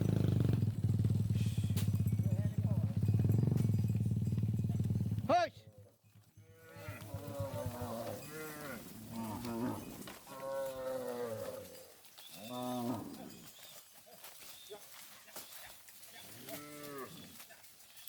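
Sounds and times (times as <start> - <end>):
cattle mooing: 6.4 - 13.4, 16.3 - 17.3.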